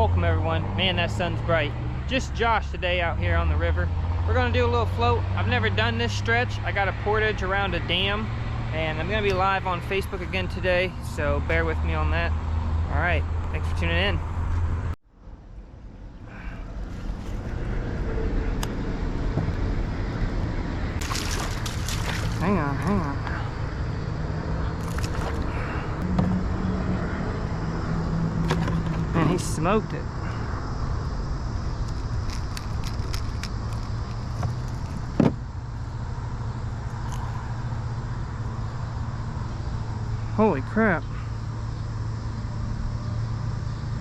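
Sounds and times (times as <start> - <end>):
low rumbling river noise: 13.1 - 43.4.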